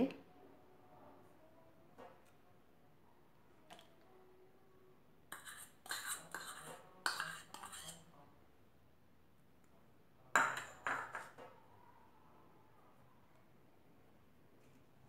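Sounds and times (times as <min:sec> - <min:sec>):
utensils clinking and scraping bowl: 0:05.3 - 0:08.1, 0:10.4 - 0:11.4.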